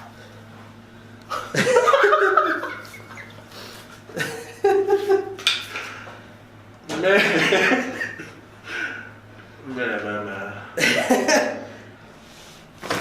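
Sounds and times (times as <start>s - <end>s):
person laughing: 1.3s - 3.4s, 4.1s - 5.4s, 10.8s - 11.7s.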